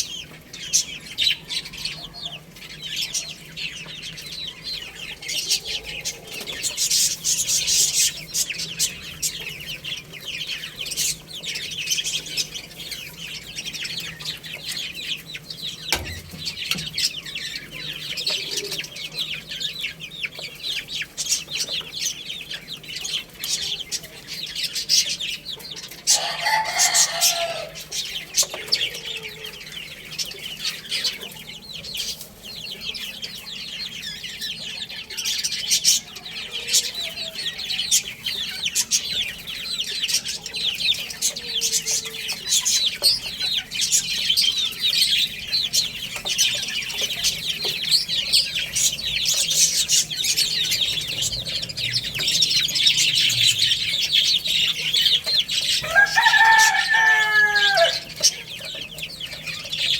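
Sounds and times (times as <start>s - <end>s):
baby chicks peeping: 0.0s - 59.9s
adult chicken call: 26.0s - 27.9s, 50.4s - 58.6s.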